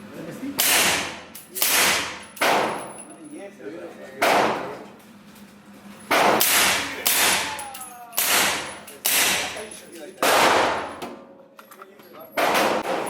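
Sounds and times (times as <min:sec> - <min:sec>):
gunshots with ringing echo: 0:10.2 - 0:10.9.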